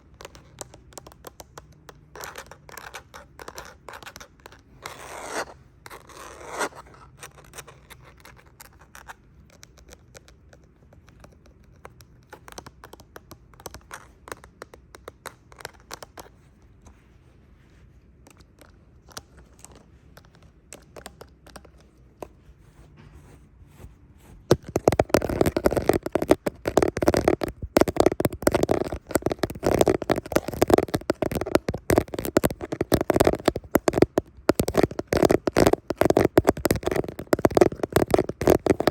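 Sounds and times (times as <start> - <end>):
fingernails scratching plastic: 24.4 - 38.9.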